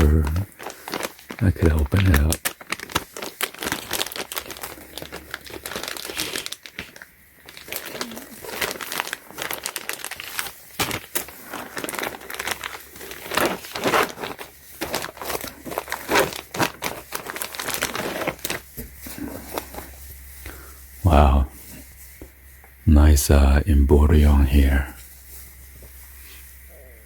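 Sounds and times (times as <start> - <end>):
packaging crinkling and rustling: 0.0 - 21.0.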